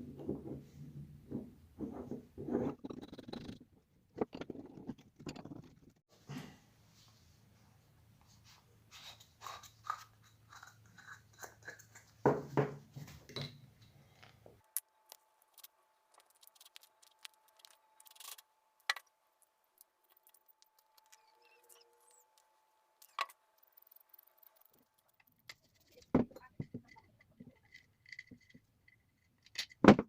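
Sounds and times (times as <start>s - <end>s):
small clicks taps and scrapes: 14.2s - 29.8s.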